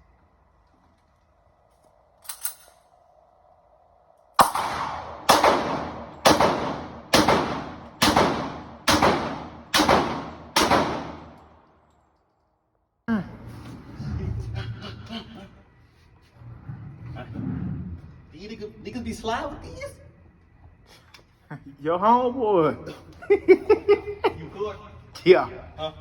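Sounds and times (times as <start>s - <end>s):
gunshots echoing: 4.4s - 11.6s.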